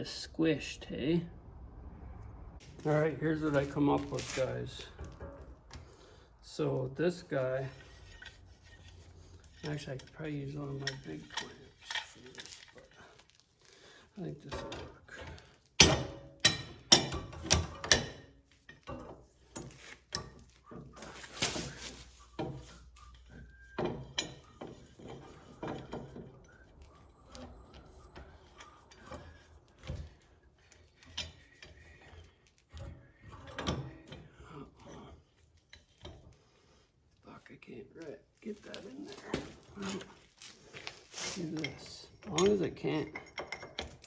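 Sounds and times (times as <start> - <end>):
knocks and clicks of tools: 4.8 - 6.1.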